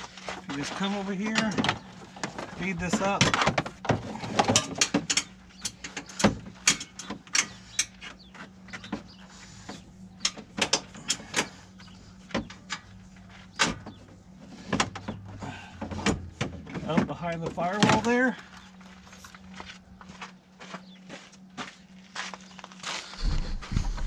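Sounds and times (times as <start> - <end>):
brake cable clicking and knocking: 0.4 - 18.4.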